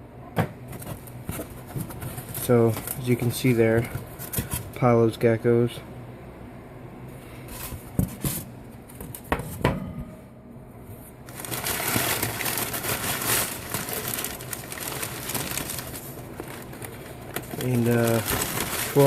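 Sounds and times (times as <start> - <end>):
packing material crinkling: 11.3 - 19.0.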